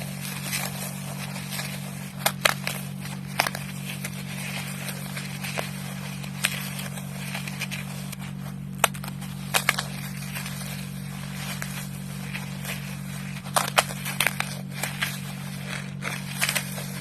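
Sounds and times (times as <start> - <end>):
floral foam crunching: 0.0 - 17.0
steady low hum: 0.0 - 17.0.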